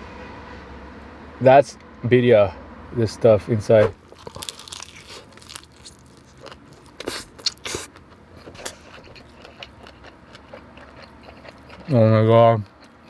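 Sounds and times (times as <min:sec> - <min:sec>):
crunchy chewing of taco: 0:03.8 - 0:13.0.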